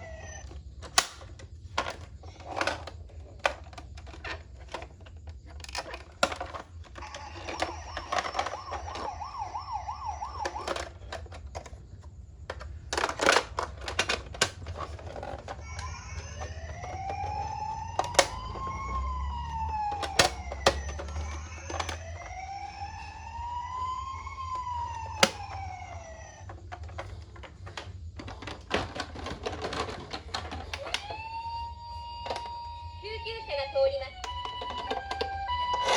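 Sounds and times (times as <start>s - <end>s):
toy siren wailing: 0.0s - 0.6s, 5.6s - 11.5s, 14.0s - 26.9s, 30.6s - 35.9s
clicking and clattering: 26.4s - 31.1s.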